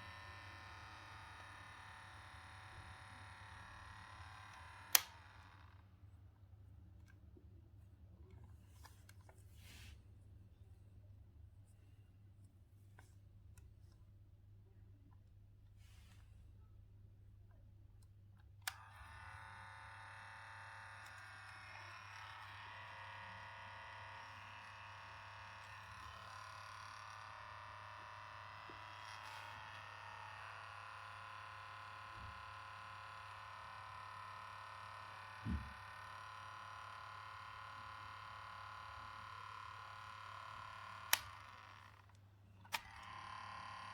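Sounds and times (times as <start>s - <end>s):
cassette player mechanical noise: 0.0s - 5.8s, 18.6s - 43.9s.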